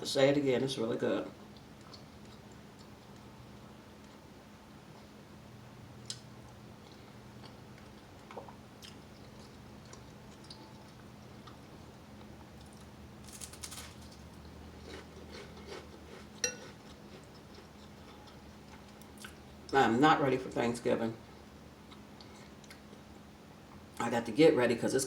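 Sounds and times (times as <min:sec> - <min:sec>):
chewing and mouth sounds: 0:01.5 - 0:04.3, 0:06.0 - 0:12.9, 0:14.1 - 0:19.8, 0:21.8 - 0:23.1
spoon clinking on glass bowl: 0:16.4 - 0:16.7.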